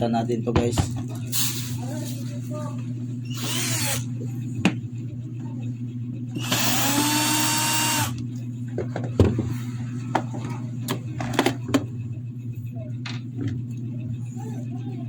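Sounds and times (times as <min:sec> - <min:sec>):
electric screwdriver whirring: 0:03.3 - 0:04.1, 0:06.4 - 0:08.2.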